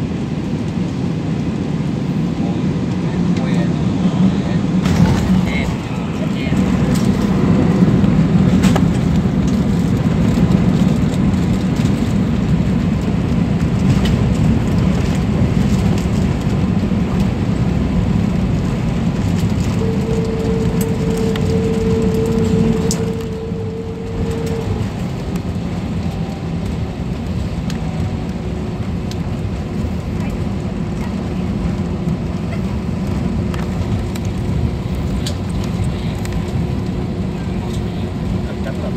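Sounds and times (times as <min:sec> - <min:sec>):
jet engines and airflow rumble: 0:00.0 - 0:38.9
steady hum: 0:17.6 - 0:30.0.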